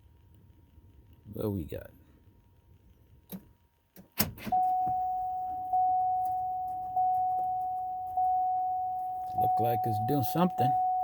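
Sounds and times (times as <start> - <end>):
electronic chime tone: 4.6 - 11.0.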